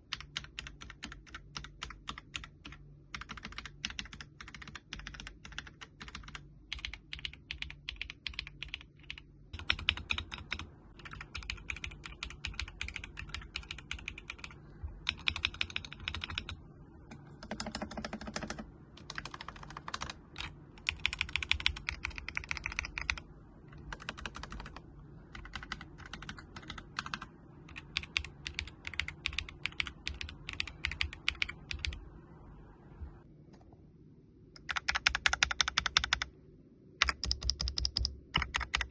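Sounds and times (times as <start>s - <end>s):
mechanical keyboard typing: 0.0s - 32.0s, 34.6s - 36.3s, 37.0s - 38.9s.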